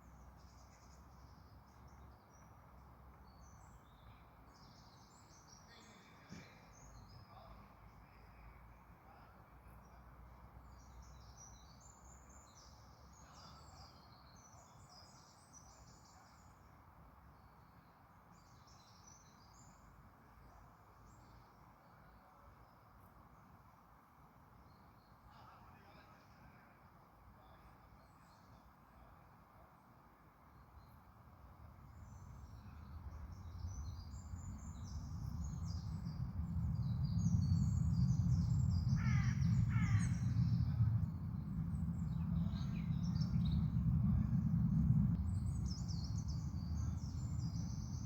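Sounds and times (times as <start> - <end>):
low steady background noise: 0.0 - 48.0
small birds chirping: 31.8 - 48.0.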